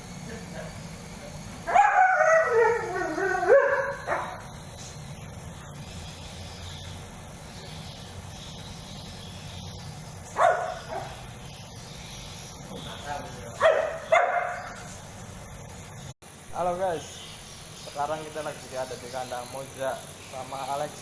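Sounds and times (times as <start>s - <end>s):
dog whine-howling: 1.7s - 4.4s
dog yelp: 1.7s - 4.5s, 10.4s - 11.2s, 13.6s - 14.8s.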